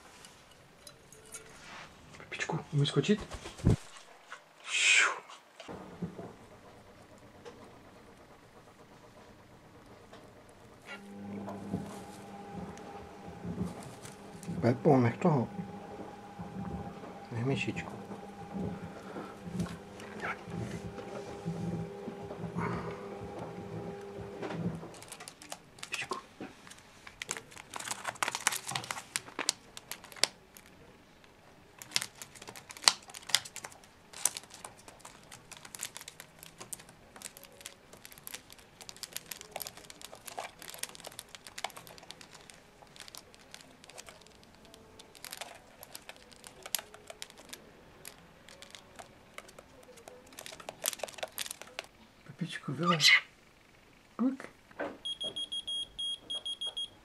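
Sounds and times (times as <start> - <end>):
bird beak nibbling and crinkling: 24.9 - 30.8, 31.7 - 52.1.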